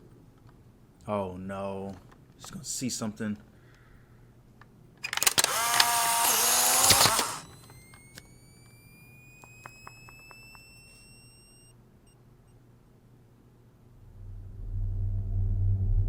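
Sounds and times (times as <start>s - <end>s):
camera shutter click: 5.1s - 8.3s
camera motor whirring: 5.1s - 11.7s
flash recharge whine: 5.1s - 11.8s.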